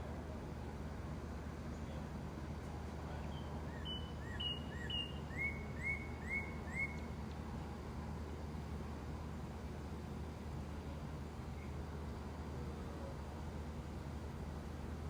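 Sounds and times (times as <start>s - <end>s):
low background noise: 0.0s - 15.0s
bird chirping: 3.2s - 7.0s.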